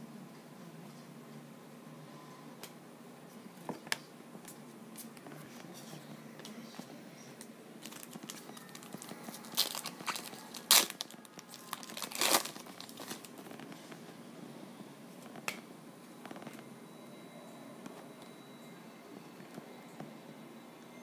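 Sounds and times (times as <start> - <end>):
wrapper tearing and crinkling: 7.8 - 13.4.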